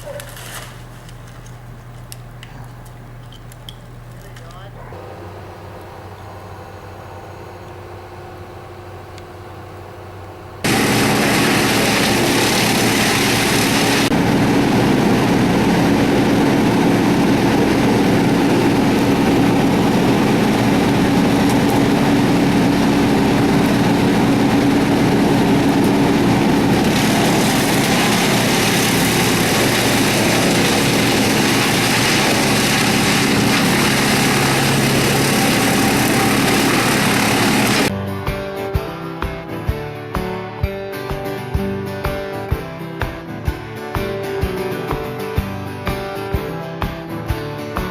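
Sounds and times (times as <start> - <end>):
wood chipper engine running: 0.0 - 37.9.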